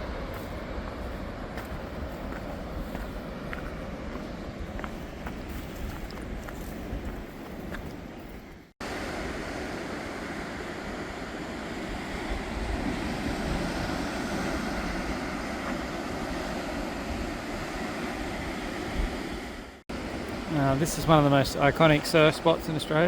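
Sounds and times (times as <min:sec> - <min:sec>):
wind on microphone: 0:00.0 - 0:08.7, 0:11.7 - 0:20.3
ocean surf breaking: 0:00.0 - 0:23.0.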